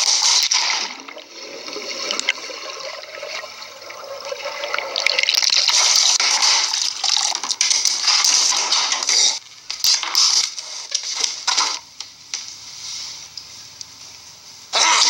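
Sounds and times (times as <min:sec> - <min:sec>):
water rushing and splashing: 0:00.0 - 0:09.0.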